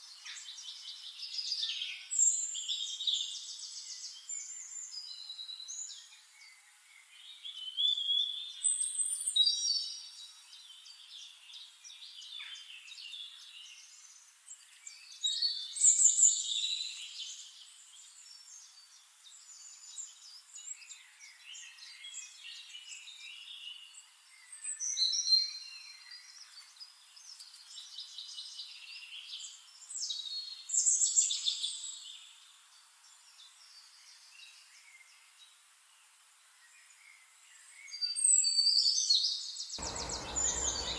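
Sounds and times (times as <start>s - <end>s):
songbirds trilling whistled song: 0.0s - 32.4s, 36.6s - 40.9s
birds twittering and chirping: 39.8s - 40.9s.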